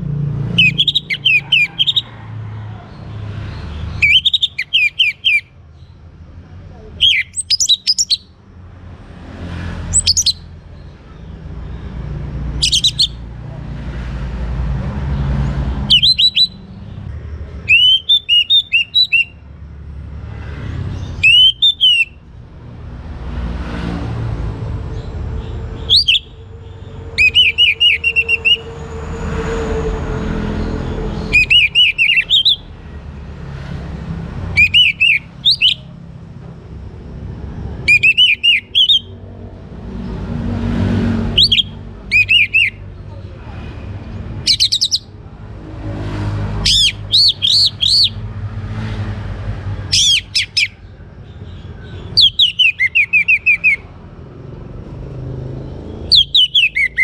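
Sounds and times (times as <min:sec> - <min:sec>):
thrush singing whistled phrases: 0:00.5 - 0:02.1, 0:03.9 - 0:05.5, 0:07.0 - 0:08.3, 0:09.9 - 0:10.5, 0:12.6 - 0:13.2, 0:15.9 - 0:16.7, 0:17.7 - 0:19.4, 0:21.2 - 0:22.2, 0:25.8 - 0:26.4, 0:27.2 - 0:28.7, 0:31.2 - 0:32.7, 0:34.5 - 0:35.9, 0:37.9 - 0:39.2, 0:41.3 - 0:42.9, 0:44.5 - 0:45.1, 0:46.6 - 0:48.2, 0:49.9 - 0:50.8, 0:52.1 - 0:53.9, 0:56.0 - 0:57.0.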